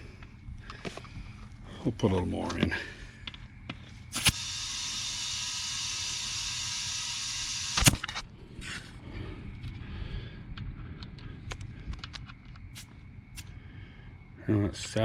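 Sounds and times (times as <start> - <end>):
air chuck clicking on valve: 4.1 - 8.2
compressed air hissing into tire: 4.1 - 8.2, 12.7 - 13.5.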